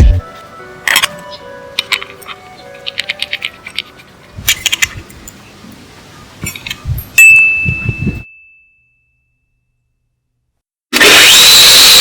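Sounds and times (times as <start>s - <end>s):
metallic ding: 6.5s - 9.7s
harsh whining noise: 10.9s - 12.0s.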